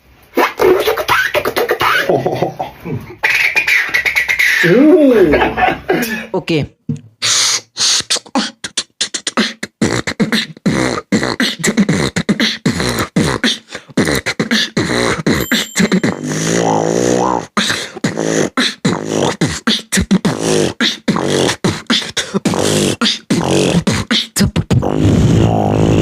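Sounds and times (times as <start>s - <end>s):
beatboxing: 0.3s - 5.4s, 7.2s - 26.0s
held wavering vocal tone: 7.9s - 24.7s.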